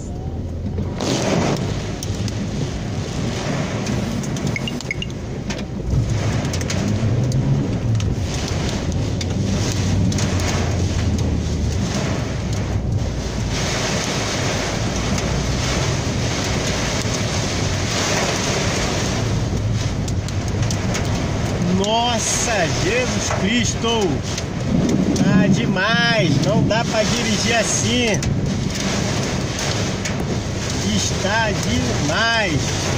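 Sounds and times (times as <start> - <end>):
heavy rain on a car: 0.0 - 32.9
low rumble: 0.0 - 32.9.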